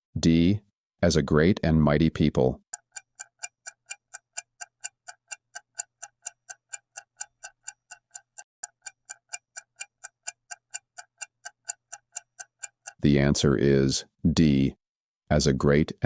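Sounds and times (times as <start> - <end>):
clock ticking: 2.6 - 13.5.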